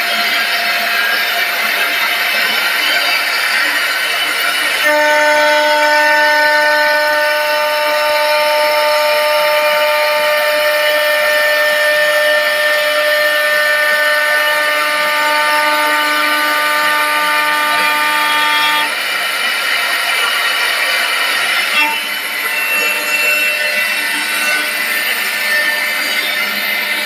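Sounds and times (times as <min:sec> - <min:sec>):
lathe machine whine: 0:00.0 - 0:27.0.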